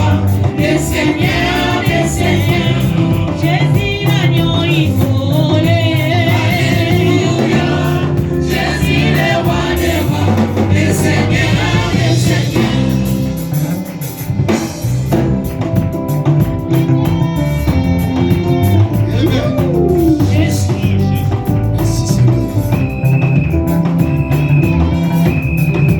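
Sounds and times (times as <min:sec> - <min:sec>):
voices singing with vibrato: 0:00.0 - 0:14.6, 0:18.0 - 0:22.4
sustained instrumental backing: 0:00.0 - 0:25.9.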